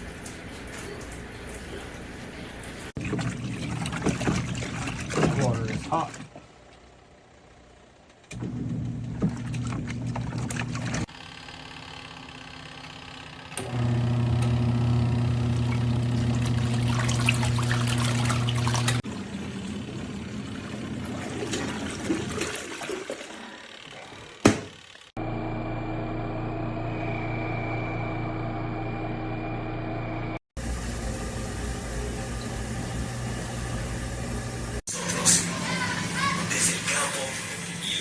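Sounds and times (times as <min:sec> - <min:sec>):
water pouring and splashing: 0:00.0 - 0:06.4, 0:09.1 - 0:11.1, 0:15.6 - 0:23.7
washing machine low hum: 0:00.0 - 0:07.1, 0:08.2 - 0:38.0.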